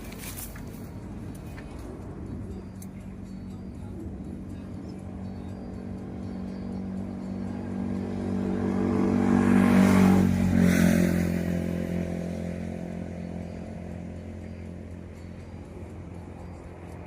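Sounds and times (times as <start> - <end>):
motorcycle passing by: 4.4 - 17.0.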